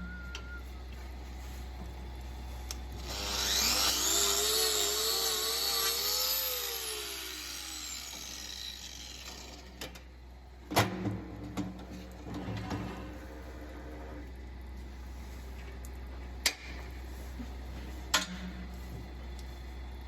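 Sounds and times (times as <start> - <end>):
electric power tool whirring: 2.9 - 9.8.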